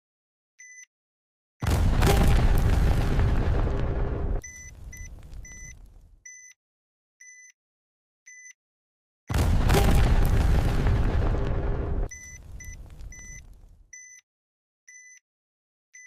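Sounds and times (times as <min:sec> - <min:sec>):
loud explosion with rumbling tail: 0:01.6 - 0:06.1, 0:09.3 - 0:13.8
bomb timer beeps: 0:04.4 - 0:06.6, 0:07.2 - 0:07.6, 0:08.3 - 0:08.6, 0:12.0 - 0:14.2, 0:14.9 - 0:15.2.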